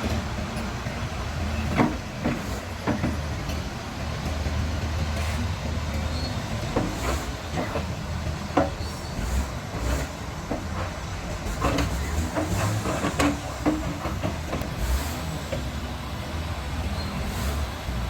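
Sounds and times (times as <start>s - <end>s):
metallic clanks and knocks: 0.0s - 5.3s, 5.9s - 9.0s, 9.8s - 15.8s
excavator diesel engine running: 0.0s - 18.0s.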